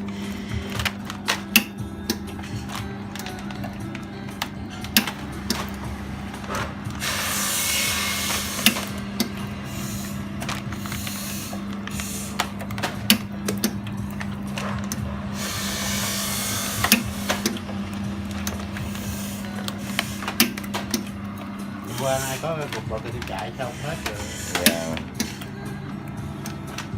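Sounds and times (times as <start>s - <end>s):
motor hum: 0.0s - 26.9s
loud hiss: 7.0s - 8.9s, 15.3s - 17.4s.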